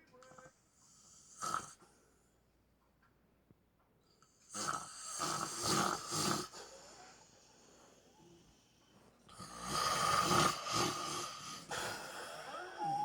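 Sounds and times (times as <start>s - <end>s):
man snoring: 4.5s - 6.5s, 9.3s - 13.0s
quiet breath: 6.4s - 9.7s, 10.5s - 13.0s.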